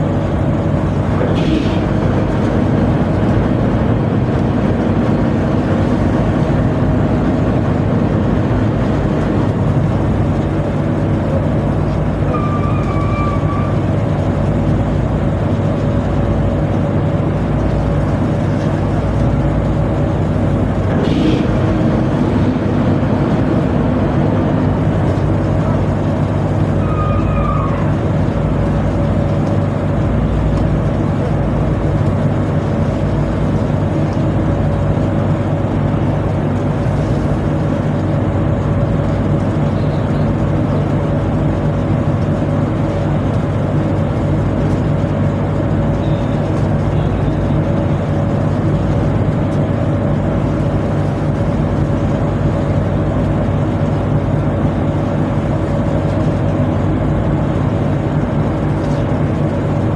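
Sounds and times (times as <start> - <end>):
boat machinery drone: 0.0 - 59.9.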